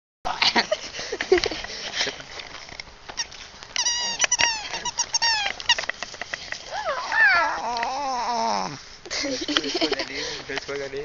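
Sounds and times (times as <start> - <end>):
rustling and clicking: 0.6 - 11.0
dog squeaky cries: 3.8 - 5.5, 6.7 - 8.5.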